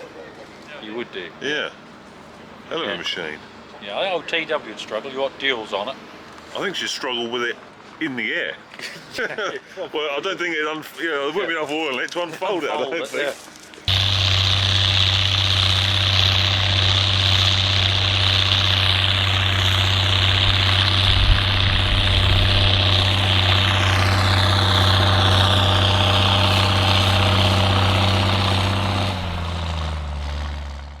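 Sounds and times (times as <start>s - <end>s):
high engine whine: 13.8s - 31.0s
heavy engine running: 13.9s - 31.0s.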